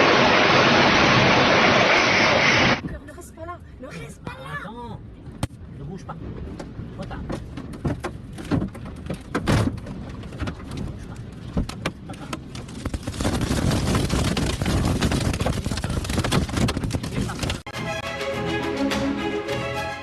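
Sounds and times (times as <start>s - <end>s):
wind buffeting microphone: 5.1s - 17.7s
knocks and clatters: 6.5s - 17.7s.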